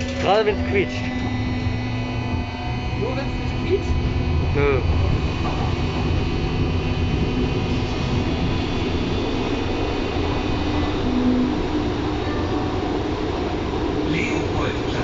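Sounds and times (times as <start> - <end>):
train wheels rumbling on rails: 3.0 - 15.0.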